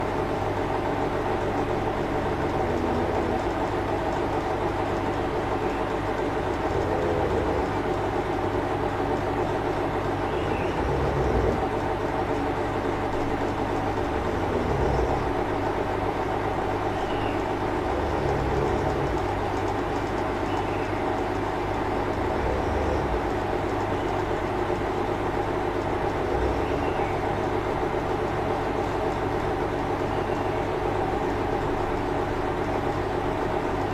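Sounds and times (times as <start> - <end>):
steady rumbling background noise: 0.0 - 33.9
monkey snoring: 1.4 - 20.7, 21.7 - 24.4, 25.8 - 29.3.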